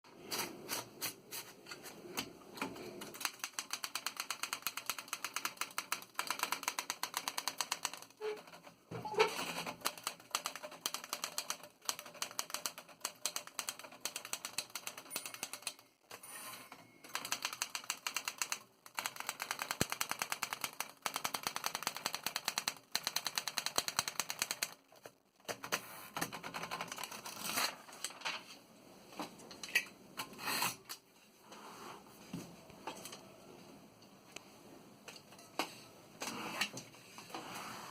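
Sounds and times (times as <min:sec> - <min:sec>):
manual typewriter typing: 0:02.6 - 0:28.2.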